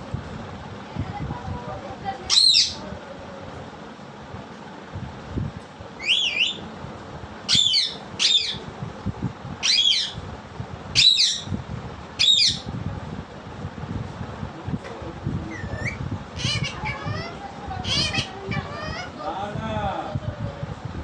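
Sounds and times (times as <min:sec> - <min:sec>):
parrot squawking: 0:02.3 - 0:02.8, 0:06.0 - 0:06.7, 0:07.5 - 0:08.7, 0:09.6 - 0:10.2, 0:11.0 - 0:11.5, 0:12.2 - 0:12.7, 0:15.5 - 0:19.2.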